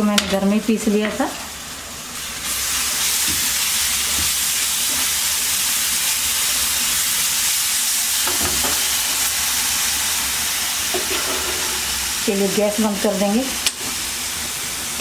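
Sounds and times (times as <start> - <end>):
paste sizzling in a pan: 0.4 - 15.0
spoon scraping a pan: 10.9 - 12.0.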